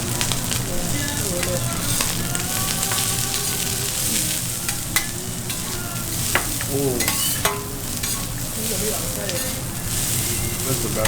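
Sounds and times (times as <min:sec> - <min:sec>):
food sizzling on a griddle: 0:00.0 - 0:11.0
metal spatula scraping and tapping: 0:04.7 - 0:11.0.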